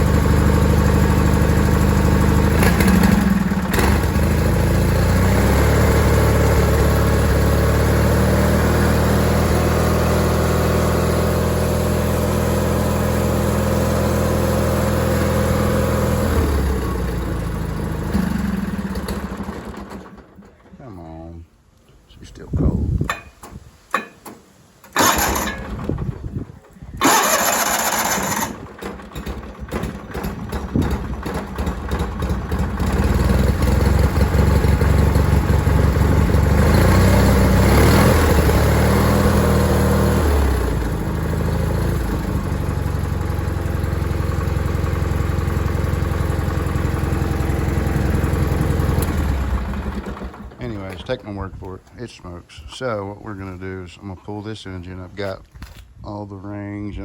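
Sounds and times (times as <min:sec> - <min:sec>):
engine cranking: 0:00.0 - 0:07.4, 0:15.1 - 0:20.8, 0:24.8 - 0:51.6
engine running: 0:00.0 - 0:21.1, 0:24.8 - 0:52.0.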